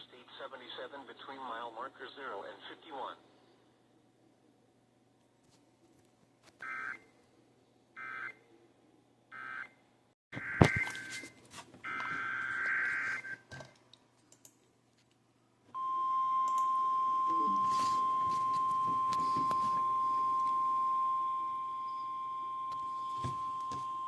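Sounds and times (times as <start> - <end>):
steady warning alarm tone: 10.4 - 13.4, 15.8 - 24.0.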